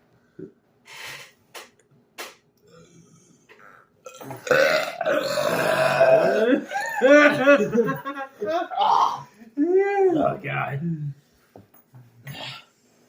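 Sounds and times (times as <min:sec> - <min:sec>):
short hiss: 0:00.9 - 0:02.4
man burping loudly: 0:02.7 - 0:07.6, 0:08.5 - 0:09.3.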